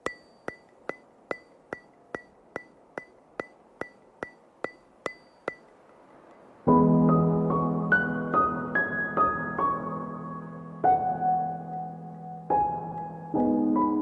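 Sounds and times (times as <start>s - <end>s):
sharp ticking clicks: 0.0s - 6.5s
music with sustained chords: 6.6s - 14.0s.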